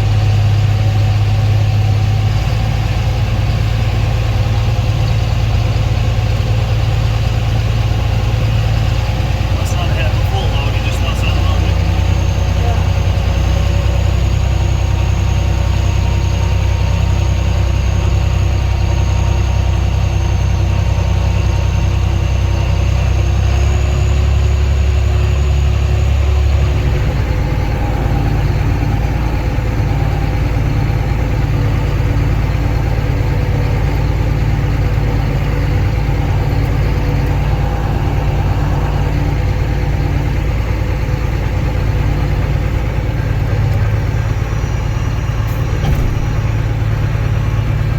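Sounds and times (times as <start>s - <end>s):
large diesel engine running: 0.0s - 47.9s.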